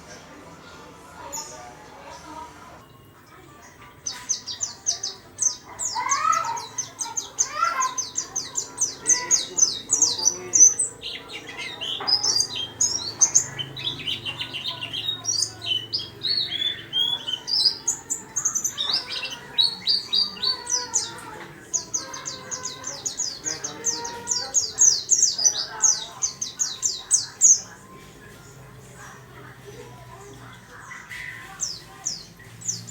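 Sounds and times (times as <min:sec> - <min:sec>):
bird singing high thin chirps: 0:04.1 - 0:28.6.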